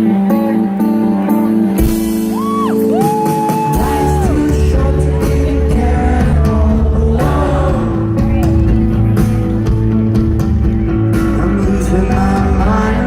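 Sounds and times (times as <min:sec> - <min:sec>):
rock band playing: 0:00.0 - 0:13.0.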